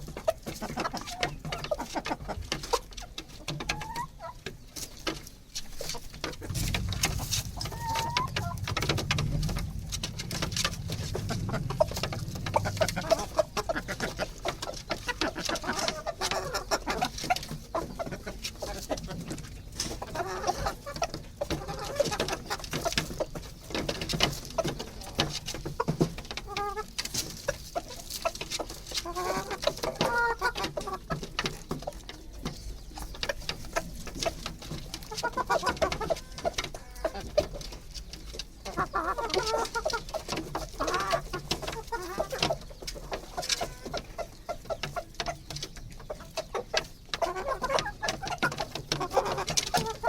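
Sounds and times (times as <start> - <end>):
chicken calls: 0.0 - 50.0
chickens clucking: 0.0 - 50.0.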